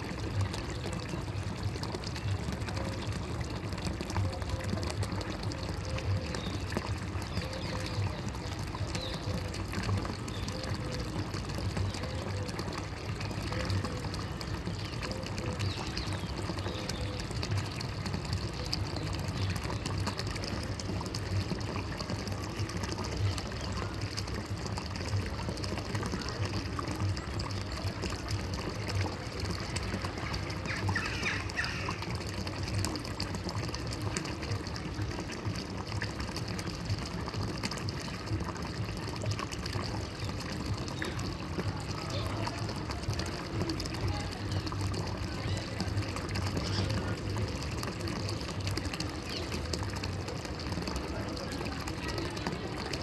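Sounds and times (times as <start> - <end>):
water trickling and gurgling: 0.0 - 53.0.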